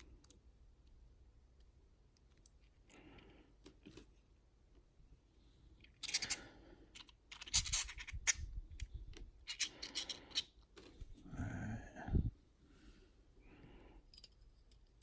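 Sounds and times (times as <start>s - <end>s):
metal parts clicking and scraping: 5.8s - 10.5s.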